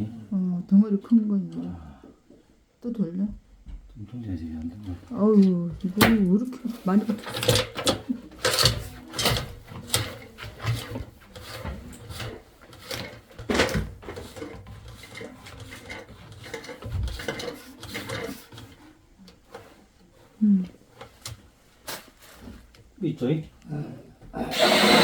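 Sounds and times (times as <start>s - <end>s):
drain cleaner scraping pipe: 5.8s - 21.2s, 24.4s - 25.0s.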